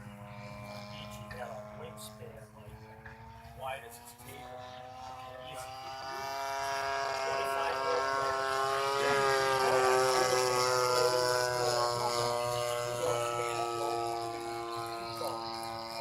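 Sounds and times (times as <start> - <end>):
model airplane engine droning: 0.0 - 16.0.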